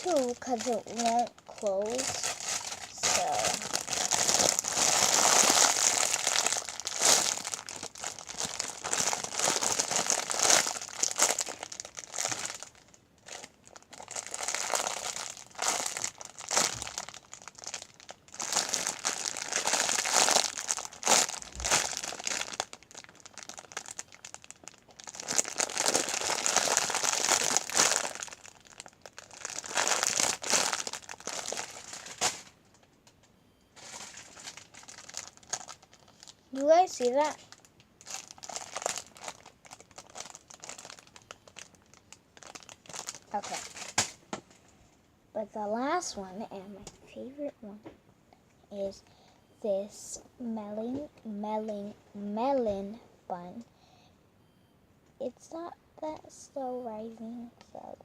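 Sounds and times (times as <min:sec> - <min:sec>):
plastic packaging crinkling: 0:00.0 - 0:33.0, 0:33.8 - 0:44.6.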